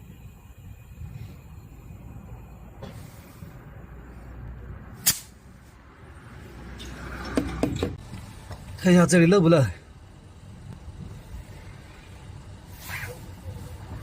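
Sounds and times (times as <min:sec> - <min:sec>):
air hose inflating tyre: 0:00.0 - 0:05.8, 0:11.0 - 0:14.0
burst of air: 0:02.7 - 0:03.8.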